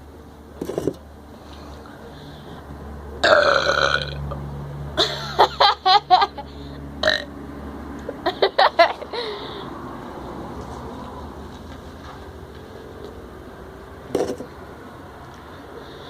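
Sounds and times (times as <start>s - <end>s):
person burping: 3.2s - 4.3s, 7.0s - 7.3s.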